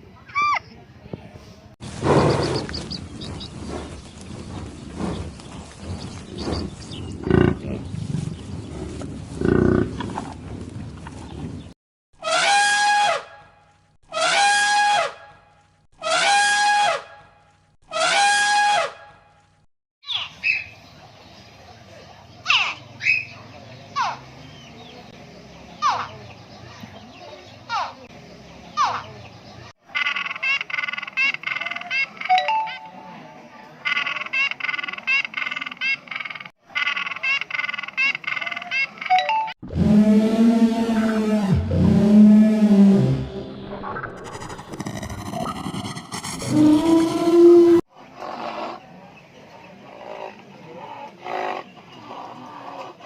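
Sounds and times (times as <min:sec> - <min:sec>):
peacock calling: 0:29.9 - 0:32.9, 0:33.8 - 0:39.4.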